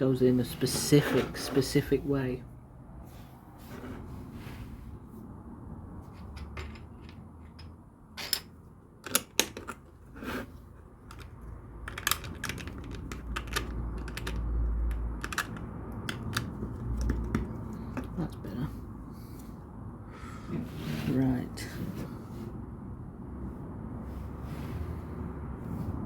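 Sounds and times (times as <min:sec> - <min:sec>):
plastic bricks clicking: 0:11.0 - 0:17.4.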